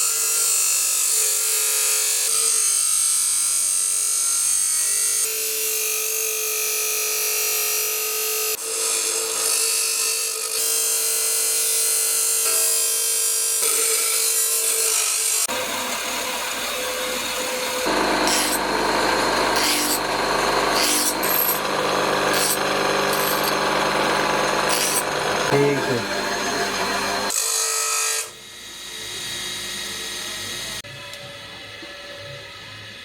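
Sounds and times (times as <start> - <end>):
steel grinding whine: 13.2 - 27.4
file rasping strokes: 17.9 - 20.1, 20.7 - 27.3.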